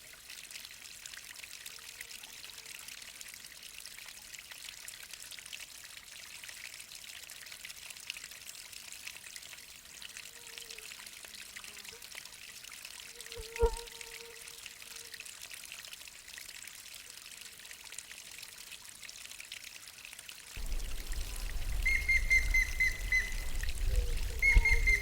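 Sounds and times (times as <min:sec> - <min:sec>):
waterfall pouring and splashing: 0:15.2 - 0:25.0
bird calling in short high notes: 0:20.6 - 0:25.0
deep rumble: 0:20.6 - 0:25.0.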